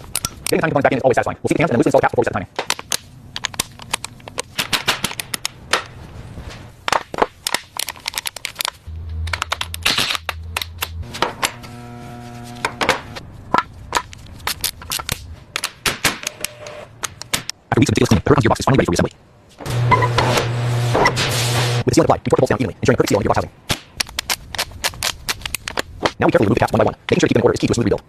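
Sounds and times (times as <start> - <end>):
low hum: 8.8 - 13.5
short buzzing tone: 11.1 - 13.2.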